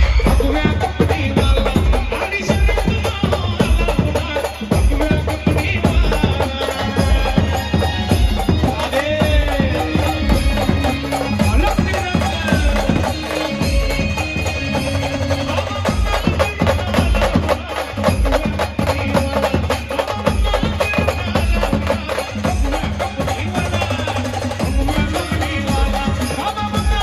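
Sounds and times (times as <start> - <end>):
keyboard melody: 0.0 - 19.0
fast drumming: 0.0 - 27.0.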